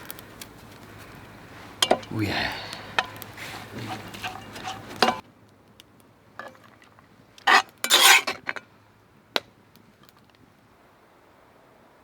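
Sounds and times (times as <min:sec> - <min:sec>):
metal utensil clinking and scraping: 0:01.8 - 0:02.1, 0:03.0 - 0:05.2, 0:07.5 - 0:08.6.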